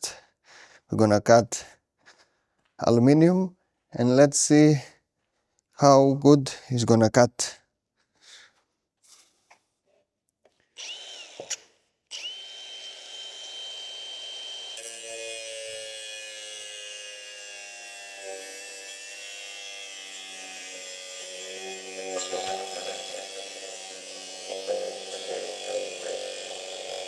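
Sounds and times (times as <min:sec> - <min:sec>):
angle grinder whine: 0:10.8 - 0:27.0
grinding metal: 0:12.1 - 0:27.0.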